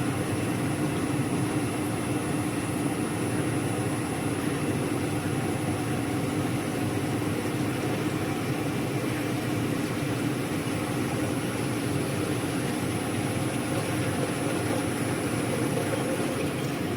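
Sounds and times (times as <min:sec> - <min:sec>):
machine hum: 0:06.5 - 0:16.9.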